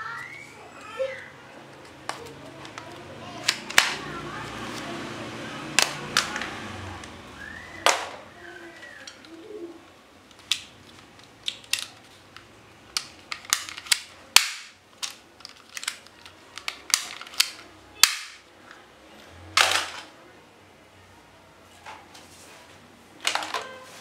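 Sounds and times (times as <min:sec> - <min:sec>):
toy guns clicking: 0:02.0 - 0:04.0, 0:10.2 - 0:18.4.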